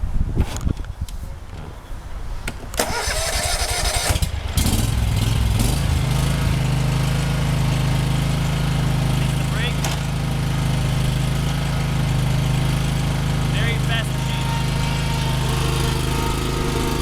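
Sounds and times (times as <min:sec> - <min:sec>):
mower engine cranking and running: 0:02.6 - 0:17.0.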